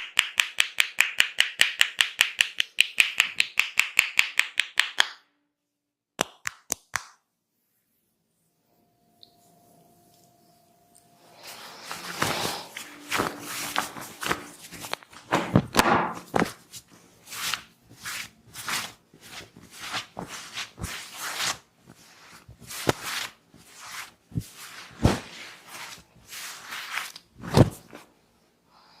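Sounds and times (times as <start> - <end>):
hands slapping body: 0.0 - 5.2, 6.2 - 7.2.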